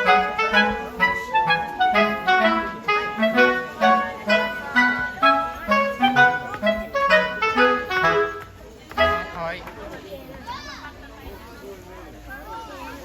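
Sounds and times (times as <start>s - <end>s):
bass line: 0.0s - 8.4s, 9.0s - 9.4s
bouncy woodwind tune: 0.0s - 9.5s.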